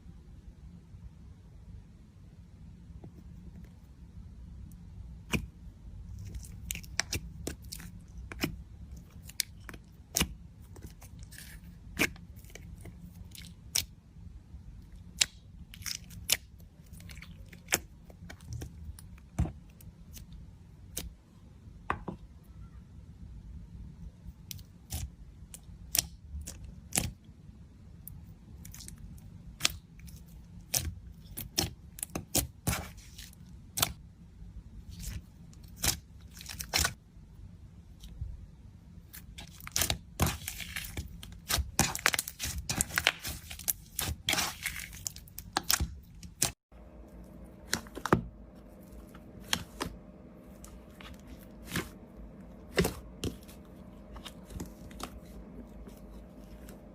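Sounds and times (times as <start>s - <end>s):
low steady hum: 0.0s - 56.9s
slime squished by hand: 39.0s - 56.9s.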